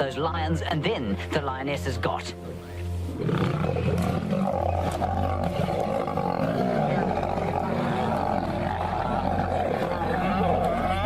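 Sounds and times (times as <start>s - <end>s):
lions snarling and roaring: 3.1s - 11.0s.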